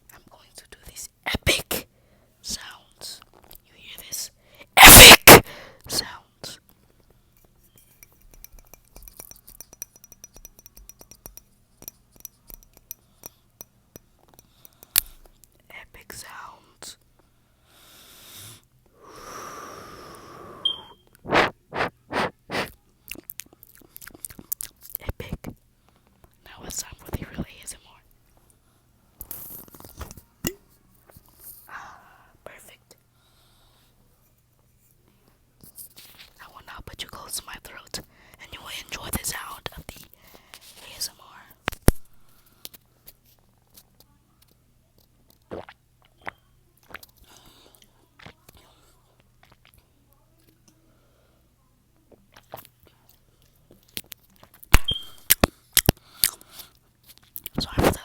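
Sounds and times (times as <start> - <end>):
short loud breath puffs: 4.8 - 5.8, 17.7 - 22.7.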